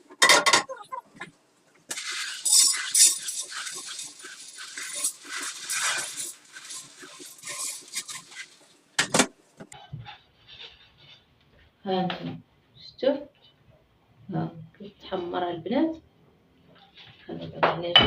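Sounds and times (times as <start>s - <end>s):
chickpeas rattling and sizzling in pan: 1.9s - 9.4s.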